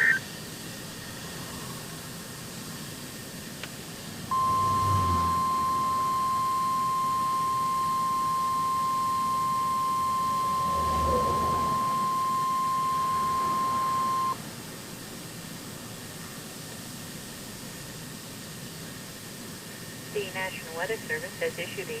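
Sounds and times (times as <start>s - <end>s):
steady high alert beep: 4.3s - 14.4s.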